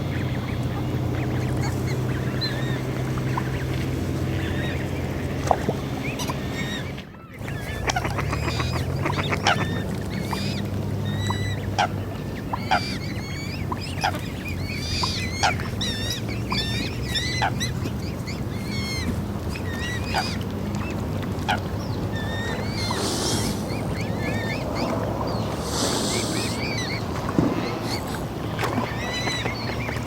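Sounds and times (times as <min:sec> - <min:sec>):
steady low rumble: 0:00.0 - 0:30.0
waterfowl honking and chirping: 0:00.0 - 0:30.0.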